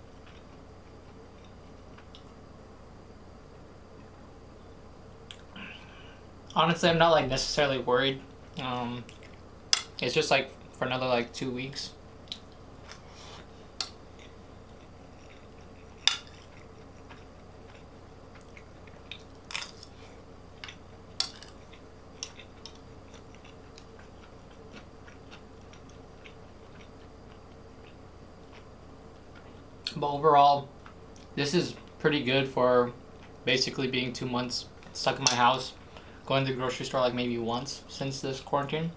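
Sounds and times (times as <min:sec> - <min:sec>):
soft chewing: 0:00.0 - 0:02.4, 0:08.2 - 0:09.4, 0:12.2 - 0:30.0, 0:30.7 - 0:32.0, 0:33.0 - 0:33.5
faint steady hum: 0:00.0 - 0:38.9.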